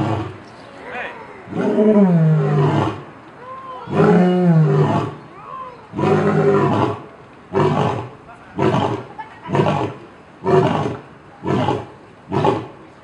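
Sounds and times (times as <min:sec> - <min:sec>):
big cat roaring: 0:01.5 - 0:03.0, 0:03.8 - 0:05.2, 0:05.9 - 0:12.7.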